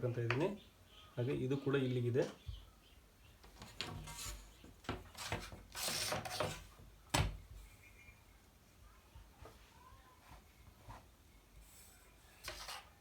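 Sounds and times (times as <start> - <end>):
scraping on cutting table: 3.6 - 4.5, 5.2 - 6.7.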